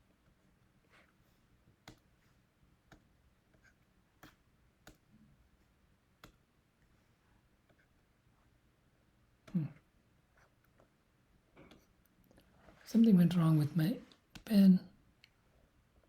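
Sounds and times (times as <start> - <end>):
stylus tapping on tablet: 1.8 - 2.1, 2.8 - 5.2, 6.2 - 6.5.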